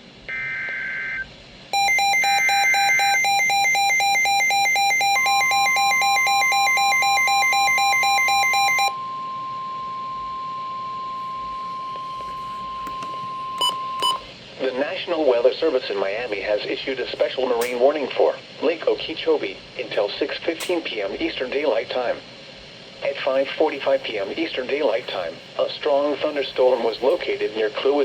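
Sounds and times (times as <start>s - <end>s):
rapid two-pitch alarm beeping: 1.8s - 14.3s
steady warning tone: 1.8s - 14.3s.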